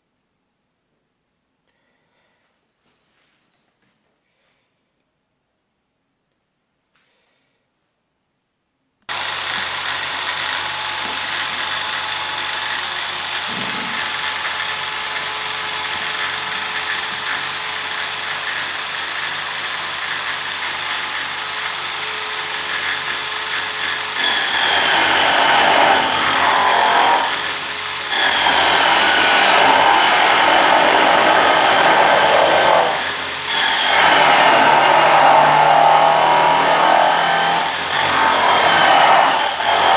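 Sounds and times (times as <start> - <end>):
electric drill drilling into wood: 9.1 - 39.9.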